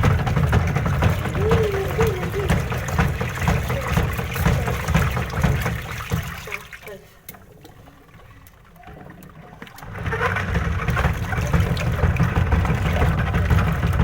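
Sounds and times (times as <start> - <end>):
washing machine churning water: 0.0 - 14.0.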